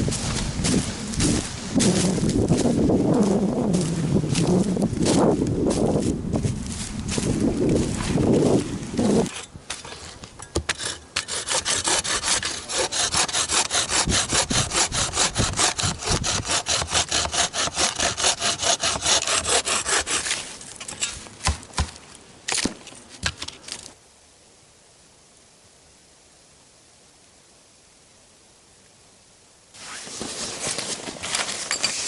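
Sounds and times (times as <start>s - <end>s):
hand saw cutting wood: 9.2s - 21.2s.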